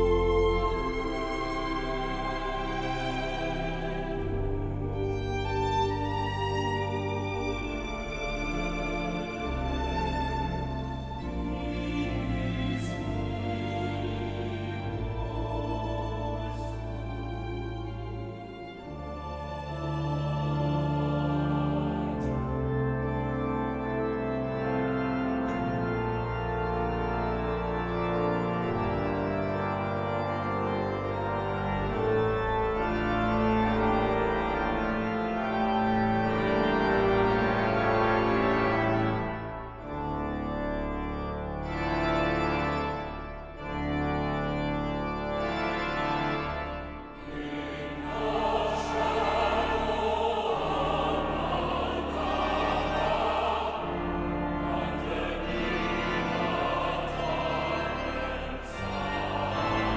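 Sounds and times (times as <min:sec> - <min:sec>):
choir singing: 0:00.0 - 0:40.4, 0:44.0 - 0:59.9
organ playing held chords: 0:00.0 - 0:59.9.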